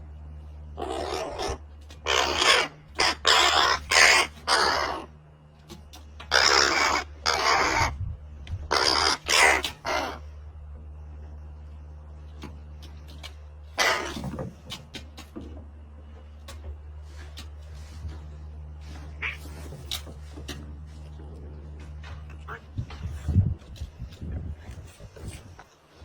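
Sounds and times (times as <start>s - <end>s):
harsh raspy animal calls: 0.8s - 5.2s, 6.2s - 8.0s, 8.6s - 10.4s, 13.7s - 14.4s, 19.0s - 20.0s.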